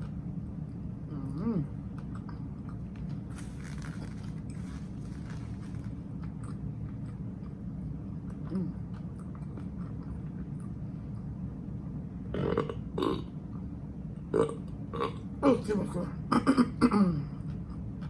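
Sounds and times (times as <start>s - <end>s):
steady low hum: 0.0s - 18.0s
person chewing: 1.9s - 7.6s.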